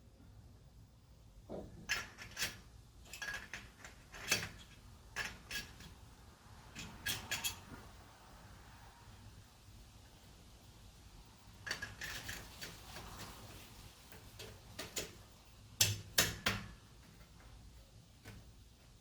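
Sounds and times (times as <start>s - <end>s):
metal tools clinking: 6.8s - 7.7s.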